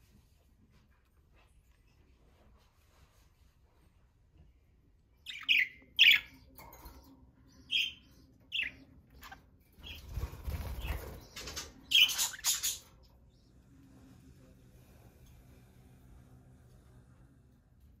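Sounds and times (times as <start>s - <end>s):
budgerigars chirping: 5.2s - 13.6s.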